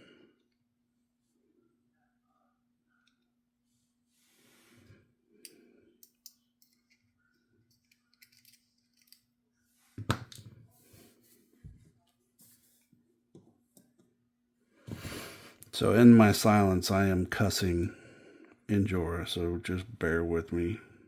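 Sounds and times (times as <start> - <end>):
soft breath: 3.7 - 6.0, 14.7 - 15.6
small parts clicking: 7.7 - 9.3.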